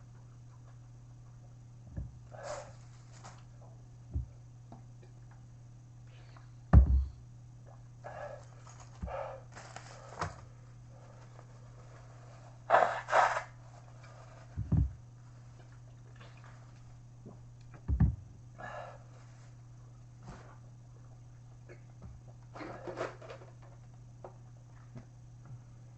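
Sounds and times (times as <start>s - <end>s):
steady low hum: 0.0s - 25.9s
low thumps of handling: 6.7s - 7.2s, 14.5s - 15.1s, 17.7s - 18.3s.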